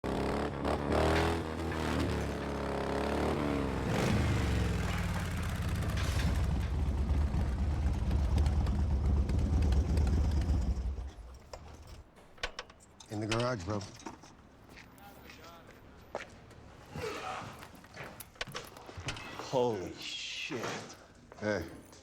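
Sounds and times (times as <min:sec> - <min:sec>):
vehicle engine revving: 0:00.0 - 0:11.0.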